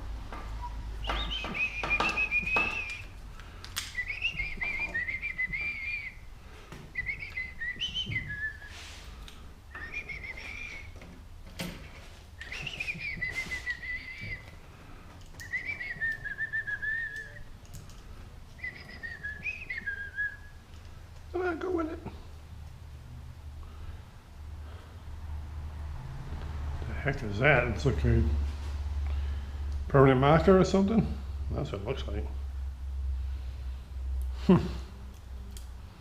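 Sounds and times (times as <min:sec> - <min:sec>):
person whistling a tune: 0:00.6 - 0:03.1, 0:04.0 - 0:06.2, 0:07.0 - 0:08.9, 0:09.7 - 0:10.9, 0:12.4 - 0:14.5, 0:15.4 - 0:17.4, 0:18.6 - 0:20.5.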